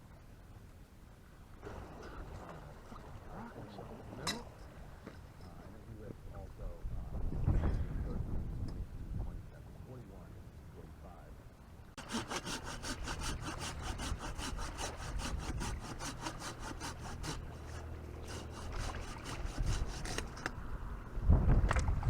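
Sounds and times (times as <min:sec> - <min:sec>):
hand saw cutting wood: 0:12.0 - 0:20.5.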